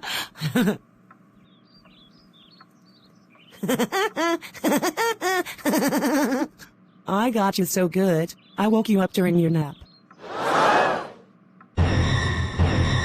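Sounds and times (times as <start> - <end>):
faint high bird chirps: 1.3 - 3.6, 8.1 - 10.2.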